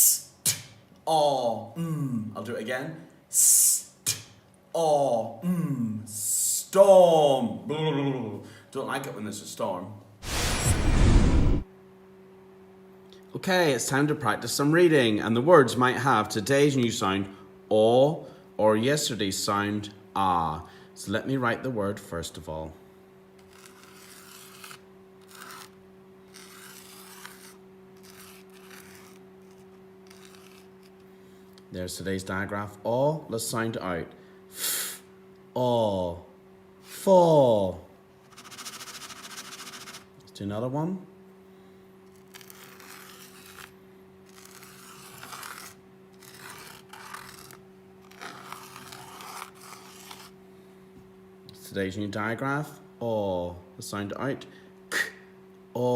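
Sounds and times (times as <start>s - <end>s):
low electrical hum: 0.0s - 55.9s
marker scratching on paper: 23.5s - 25.7s, 26.4s - 30.7s, 38.3s - 40.1s, 44.4s - 47.6s.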